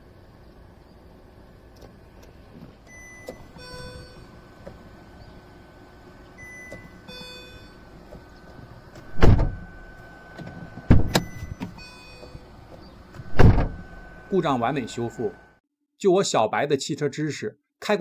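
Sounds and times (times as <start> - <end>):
car door shutting: 1.8 - 4.9, 6.4 - 14.3
short electronic chime: 11.2 - 12.3.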